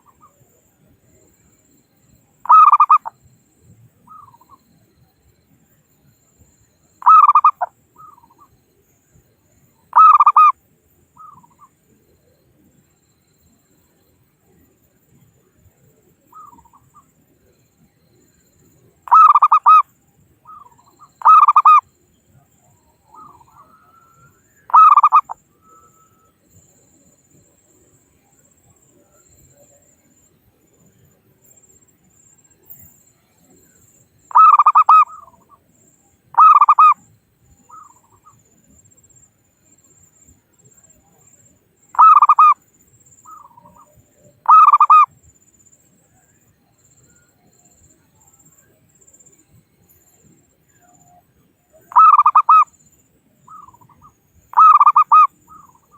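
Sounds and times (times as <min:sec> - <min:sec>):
dove cooing: 0:02.5 - 0:03.1, 0:07.0 - 0:08.4, 0:10.0 - 0:10.5, 0:19.1 - 0:19.8, 0:23.1 - 0:26.0, 0:34.3 - 0:35.5, 0:36.4 - 0:37.0, 0:42.0 - 0:42.6, 0:43.3 - 0:45.1, 0:51.9 - 0:52.7, 0:53.5 - 0:55.9.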